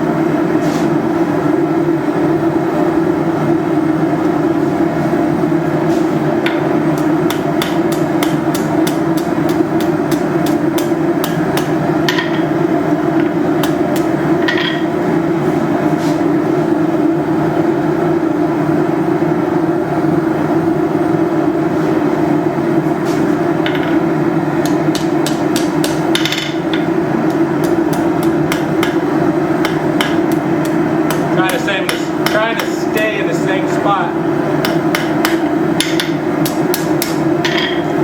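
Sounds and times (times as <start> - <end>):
hammer striking steel on anvil: 24.6 - 29.0, 29.6 - 33.1.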